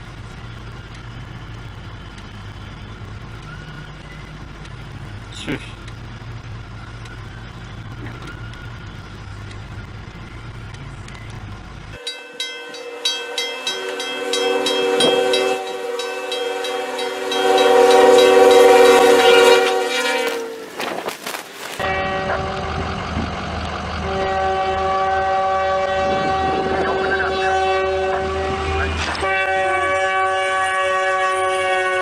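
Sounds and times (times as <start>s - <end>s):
low steady rumble: 0.0s - 12.0s
train wheels clacking: 9.4s - 21.2s
train horn: 12.0s - 20.9s, 21.8s - 23.2s, 23.8s - 32.0s.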